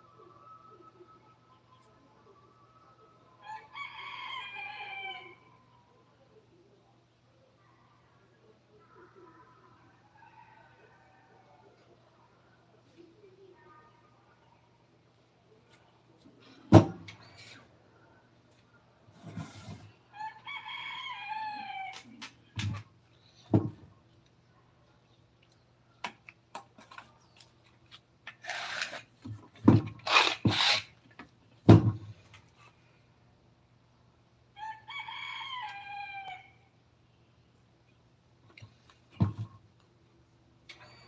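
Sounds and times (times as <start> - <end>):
rooster crowing: 3.4 - 5.5, 20.1 - 22.0, 34.6 - 36.7.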